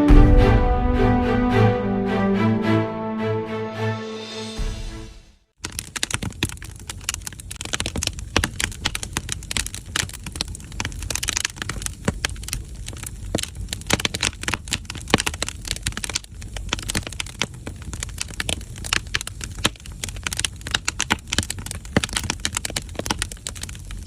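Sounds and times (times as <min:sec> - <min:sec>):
firewood crackling and popping: 0:05.6 - 0:24.0
low rumble of fire: 0:05.6 - 0:24.0.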